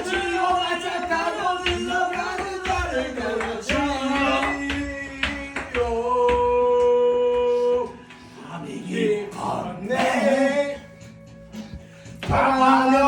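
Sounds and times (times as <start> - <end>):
music with person singing: 0.0 - 13.0.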